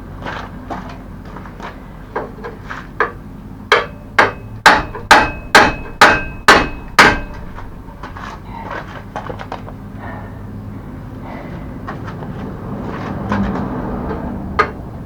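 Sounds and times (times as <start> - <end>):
hammer striking metal pin: 3.0 - 8.2.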